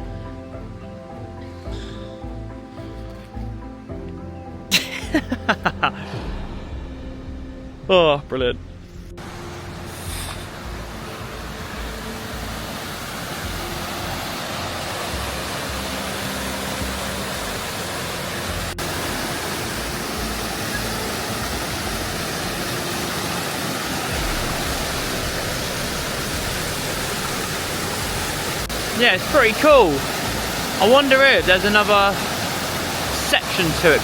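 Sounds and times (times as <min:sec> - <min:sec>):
small waterfall rushing: 0:09.2 - 0:34.0.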